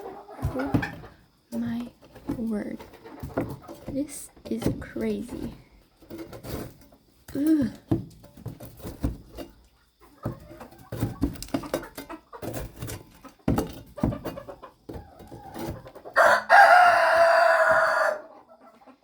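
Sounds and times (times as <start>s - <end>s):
metal spatula scraping wood: 1.5s - 7.1s, 10.2s - 16.2s
rooster crowing: 16.2s - 18.3s.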